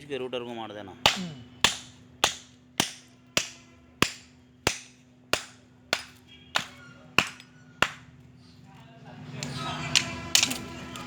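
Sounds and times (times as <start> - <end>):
hammer striking metal: 1.1 - 8.1.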